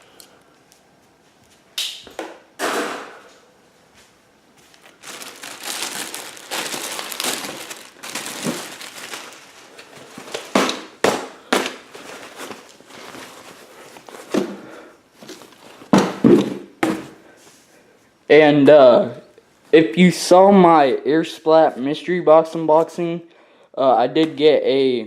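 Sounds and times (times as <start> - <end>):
sharp snaps: 1.8 - 2.3
packaging crinkling and rustling: 4.7 - 16.5.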